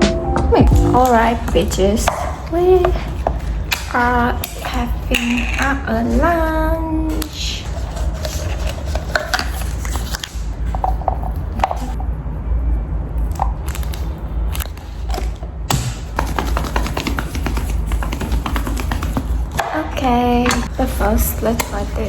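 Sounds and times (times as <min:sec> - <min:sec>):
food packaging and utensils clatter: 0:07.2 - 0:12.0.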